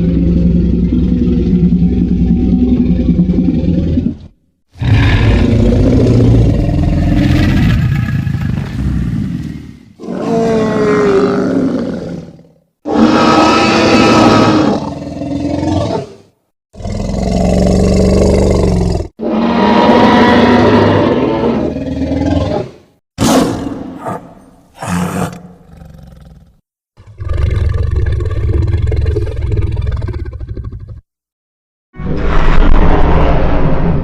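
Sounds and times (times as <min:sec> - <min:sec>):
monster roars and growls: 0:04.8 - 0:16.2.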